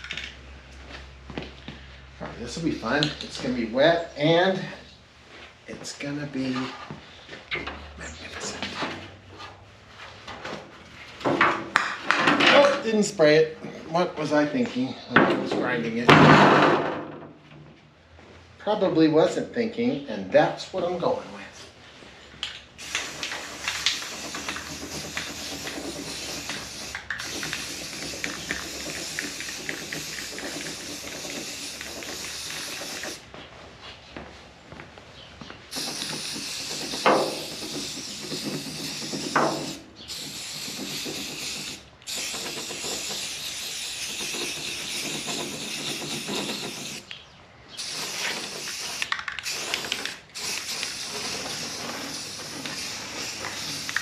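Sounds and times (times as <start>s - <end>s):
aerosol spray can hissing: 22.8s - 33.2s, 35.7s - 47.1s, 47.8s - 54.0s.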